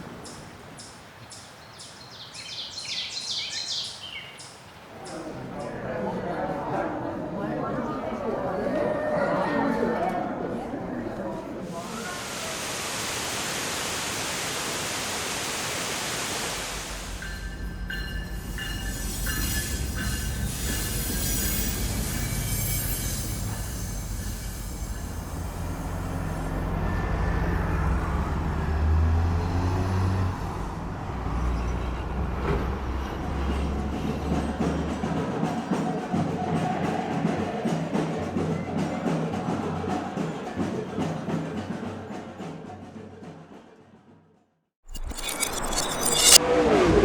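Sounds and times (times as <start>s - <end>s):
heavy vehicle rumbling past: 24.7s - 35.4s.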